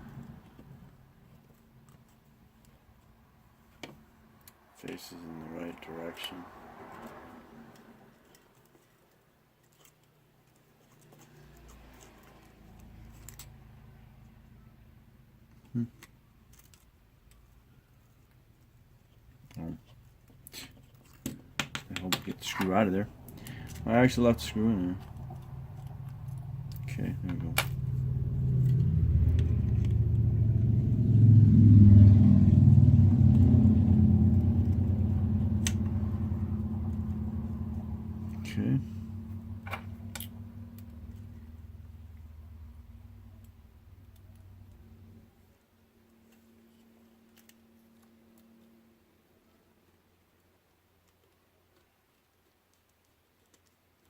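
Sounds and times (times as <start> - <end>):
low engine rumble: 21.8 - 48.0
low hum: 22.2 - 49.7.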